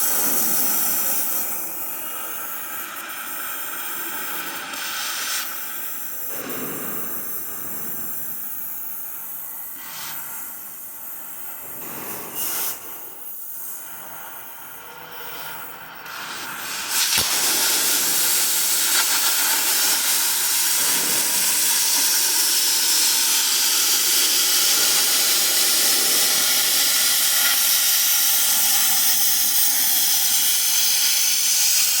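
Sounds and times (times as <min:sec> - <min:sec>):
cutting torch hissing: 0:00.0 - 0:32.0
torch ignition click: 0:16.1 - 0:22.0.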